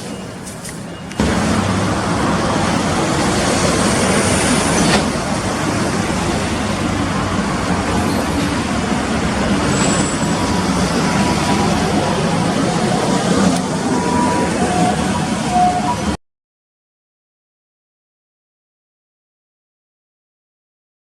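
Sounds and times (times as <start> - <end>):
rumble of passing vehicles: 0.0 - 16.2
faint high squeal: 9.5 - 16.0.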